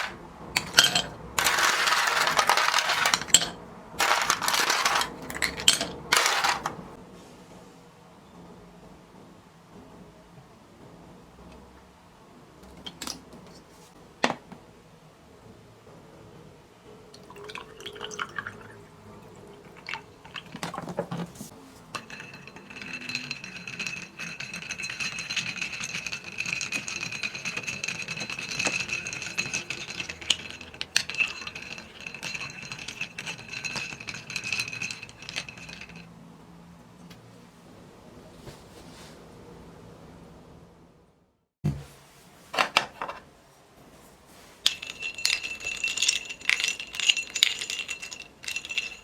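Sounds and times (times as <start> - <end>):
kitchenware clinking: 0.0 - 7.0, 17.2 - 36.1, 44.6 - 49.0
liquid pouring into glass with ice: 17.2 - 20.6.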